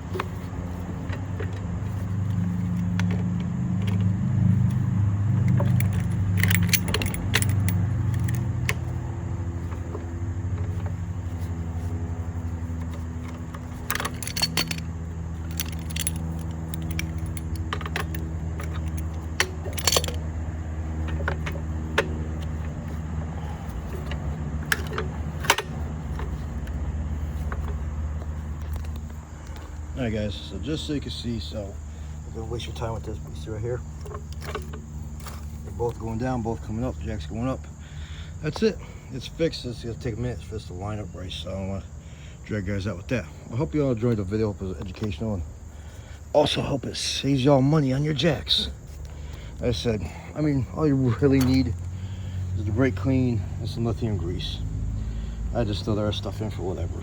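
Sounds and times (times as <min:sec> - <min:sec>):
low motor hum: 0:00.0 - 0:37.9
metal tools clinking: 0:04.6 - 0:27.8, 0:32.4 - 0:36.1, 0:51.0 - 0:51.8.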